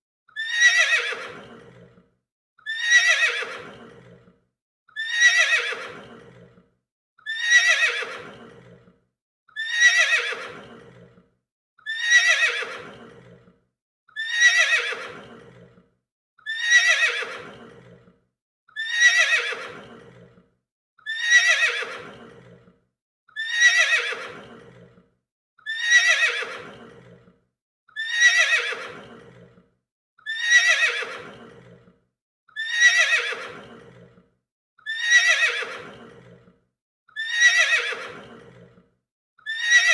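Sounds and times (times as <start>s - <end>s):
horse whinnying: 0.4s - 2.0s, 2.6s - 4.3s, 5.0s - 6.6s, 7.3s - 8.9s, 9.6s - 11.2s, 11.8s - 13.5s, 14.2s - 15.8s, 16.5s - 18.1s, 18.8s - 20.4s, 21.1s - 22.7s, 23.4s - 24.9s, 25.7s - 27.3s, 28.0s - 29.6s, 30.2s - 31.9s, 32.6s - 34.2s, 34.8s - 36.4s, 37.2s - 38.7s, 39.5s - 39.9s.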